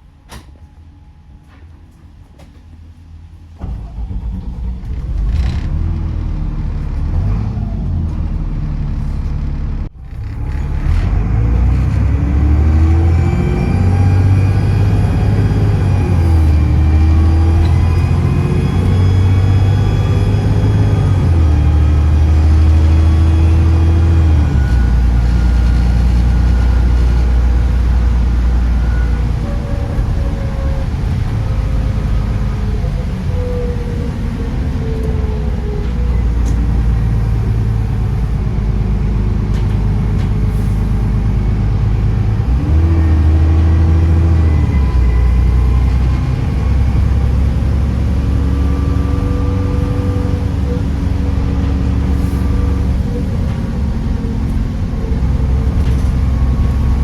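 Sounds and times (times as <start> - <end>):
bus diesel engine revving: 3.6 - 57.0
turbocharger whistle: 12.6 - 37.7.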